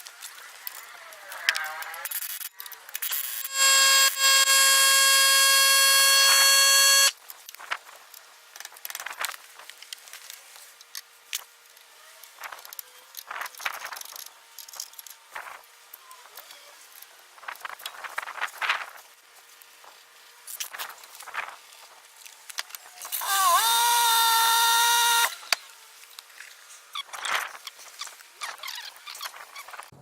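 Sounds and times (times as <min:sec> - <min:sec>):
electronic buzzer tone: 0:03.0 - 0:07.1.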